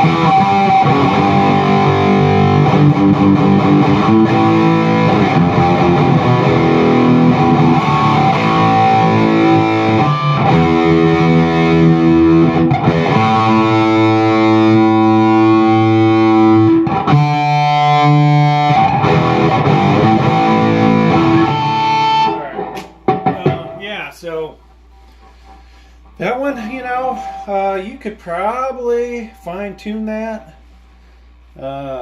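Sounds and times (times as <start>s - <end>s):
distorted electric guitar chords: 0.0s - 24.0s.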